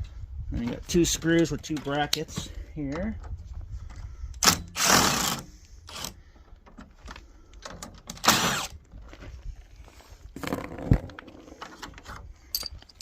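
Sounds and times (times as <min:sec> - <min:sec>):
metallic clinks of screws: 0:12.5 - 0:13.0.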